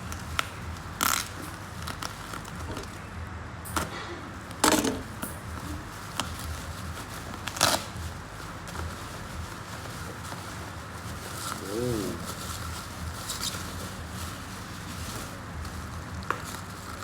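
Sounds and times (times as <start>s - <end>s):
packaging rustling: 4.4s - 17.0s.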